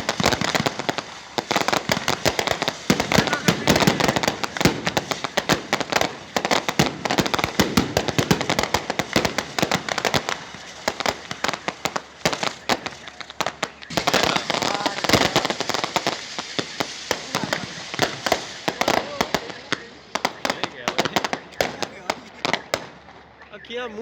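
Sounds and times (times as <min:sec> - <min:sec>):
firecrackers banging and crackling: 0:00.0 - 0:24.0.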